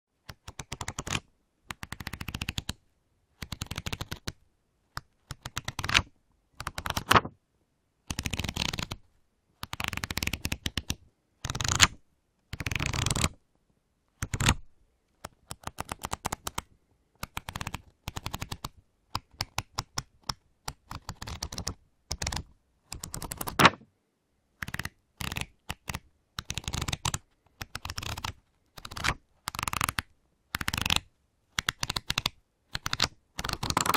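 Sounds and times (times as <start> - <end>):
pages slapping shut: 6.7 - 7.3, 23.0 - 23.8
book pages flicked through: 6.9 - 7.3, 23.2 - 23.8.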